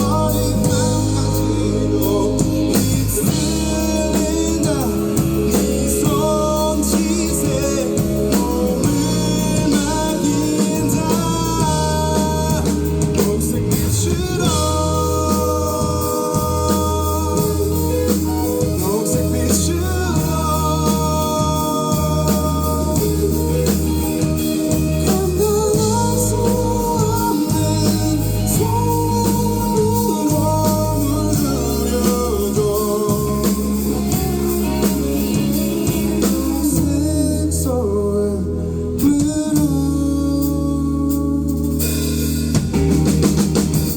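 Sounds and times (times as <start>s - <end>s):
person singing: 0.0s - 42.2s
live band playing: 0.0s - 43.9s
steady bass line: 0.0s - 43.9s.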